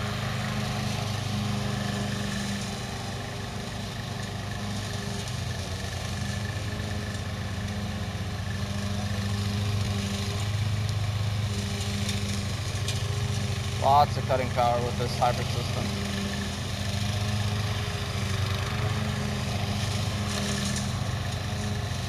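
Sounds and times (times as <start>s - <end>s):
mower engine running: 0.0s - 22.0s.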